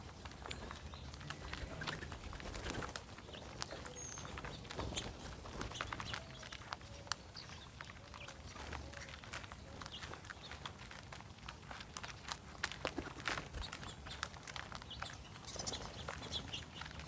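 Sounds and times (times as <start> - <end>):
birds clicking and tapping: 0.0 - 17.0
small bird chirp: 3.2 - 10.6, 13.5 - 17.0.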